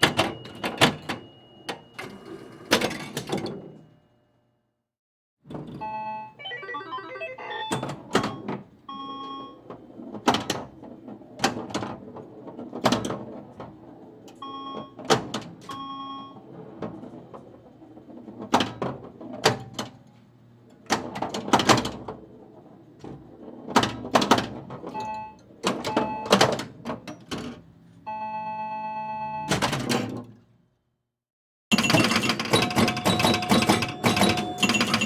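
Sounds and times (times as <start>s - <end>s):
short electronic beeps: 5.8s - 8.5s.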